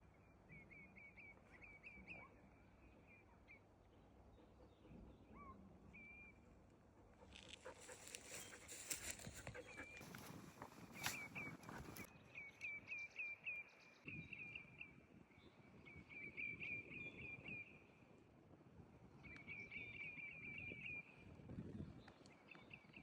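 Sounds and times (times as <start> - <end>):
footsteps crunching on ground: 7.3 - 12.1
songbird chirping: 7.3 - 14.7.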